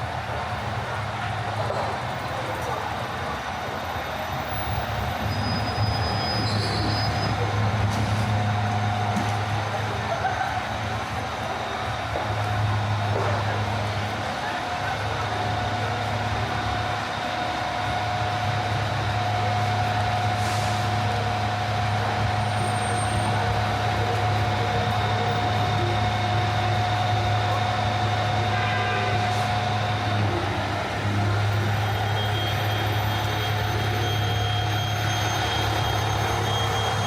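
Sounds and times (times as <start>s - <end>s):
thin steady whine: 15.9s - 37.0s
traffic hiss: 18.9s - 22.2s.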